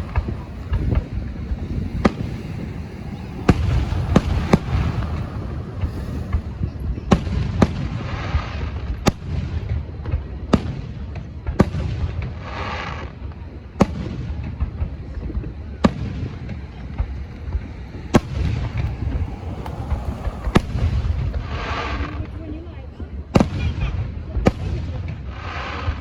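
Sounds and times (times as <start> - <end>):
firework shells bursting: 0.0 - 8.8
low rumble of echoing booms: 0.0 - 9.8, 13.4 - 23.6.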